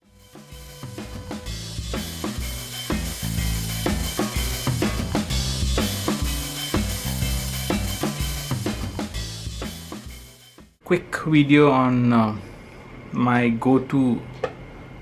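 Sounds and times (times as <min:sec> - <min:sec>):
bass line: 0:00.0 - 0:10.8
drum kit beat: 0:00.0 - 0:10.8.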